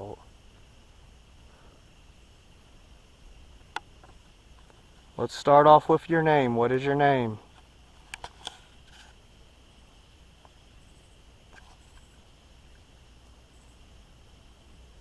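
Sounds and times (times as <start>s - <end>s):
night insects chirring: 0.0s - 15.0s
small sharp clicks: 8.0s - 8.6s.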